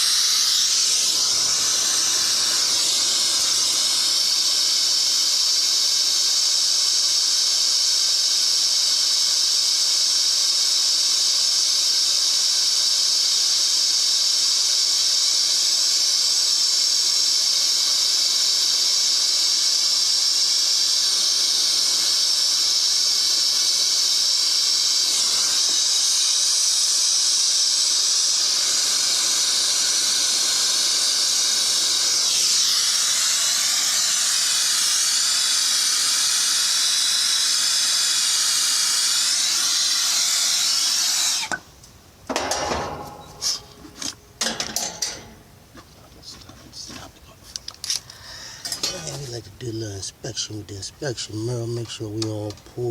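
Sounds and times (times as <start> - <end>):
torch flame hissing: 0.0 - 52.9.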